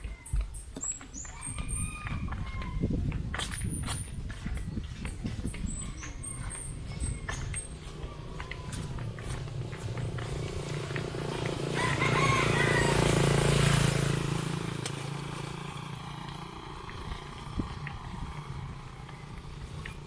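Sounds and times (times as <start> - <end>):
motor vehicle passing: 0.9 - 20.0.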